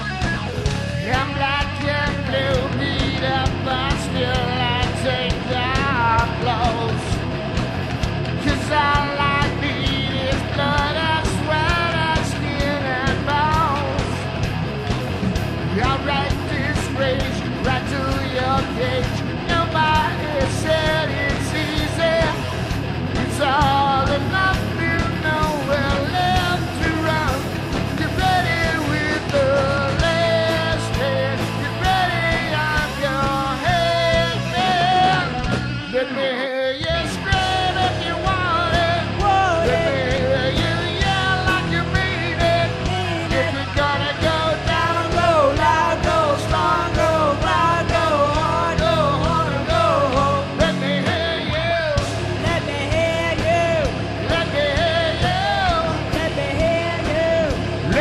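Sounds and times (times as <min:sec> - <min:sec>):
lead singer singing: 0:00.0 - 0:07.5, 0:08.3 - 0:14.5, 0:15.5 - 0:58.0
bass guitar: 0:00.0 - 0:58.0
drums: 0:00.0 - 0:58.0
heavy rock band playing: 0:00.0 - 0:58.0.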